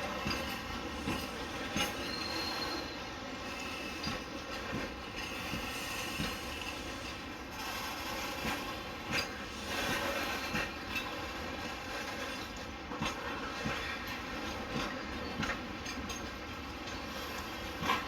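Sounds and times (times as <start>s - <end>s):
freight train rumble: 0.0s - 18.0s
high wheel squeal: 1.8s - 4.0s.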